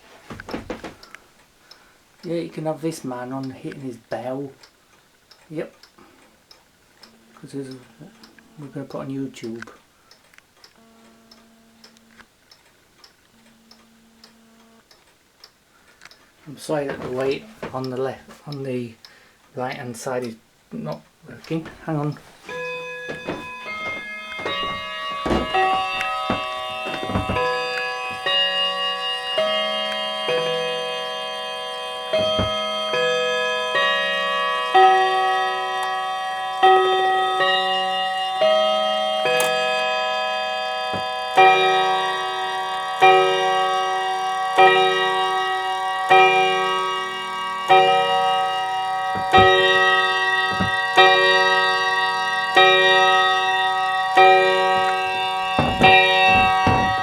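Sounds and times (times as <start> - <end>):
clock striking: 16.5 - 18.8, 20.9 - 57.0
chiming clock tune: 21.5 - 57.0
sharp knocks: 22.5 - 28.4, 32.2 - 32.7, 49.1 - 51.9, 53.0 - 57.0.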